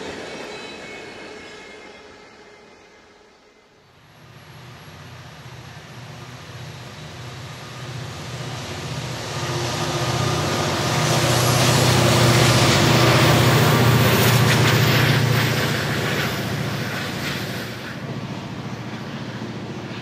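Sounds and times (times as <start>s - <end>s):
locomotive engine drone: 3.9s - 20.0s
wheel-and-rail noise: 8.4s - 20.0s.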